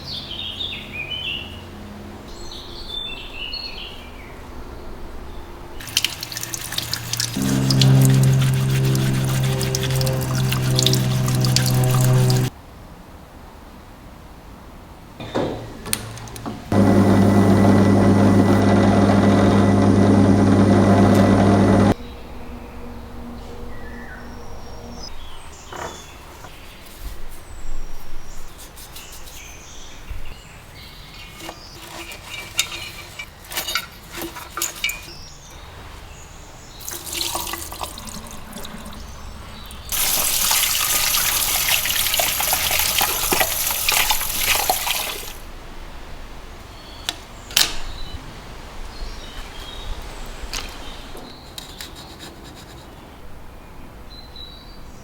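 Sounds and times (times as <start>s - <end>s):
running water: 5.8s - 12.5s, 16.7s - 22.0s, 36.8s - 45.6s.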